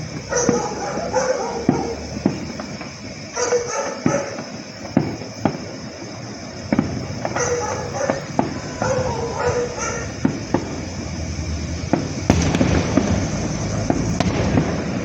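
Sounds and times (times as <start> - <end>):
firework bangs: 0.0 - 15.0
dog barking: 0.3 - 2.0, 3.4 - 4.4, 7.3 - 10.3.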